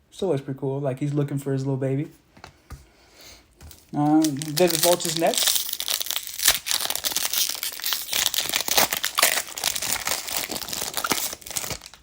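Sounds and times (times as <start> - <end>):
foil wrapper crinkling and tearing: 3.6 - 12.0.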